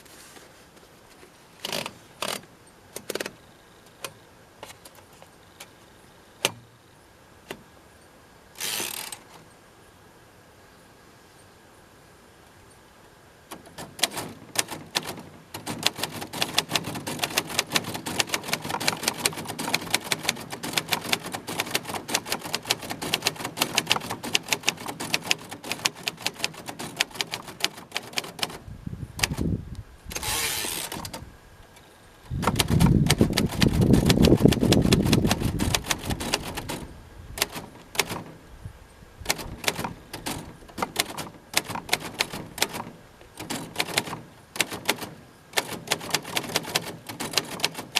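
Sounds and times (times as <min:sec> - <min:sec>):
typewriter carriage sliding: 0:01.6 - 0:03.4, 0:08.6 - 0:09.5, 0:13.5 - 0:28.6, 0:29.2 - 0:29.5, 0:30.1 - 0:31.3, 0:32.3 - 0:38.4, 0:39.2 - 0:47.9
typewriter keystrokes clacking: 0:13.5 - 0:28.6, 0:29.2 - 0:29.5, 0:32.3 - 0:38.4, 0:39.2 - 0:47.9.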